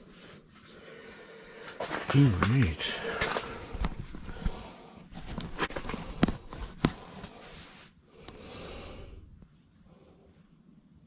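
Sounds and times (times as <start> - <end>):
handling rustling: 1.8 - 7.9.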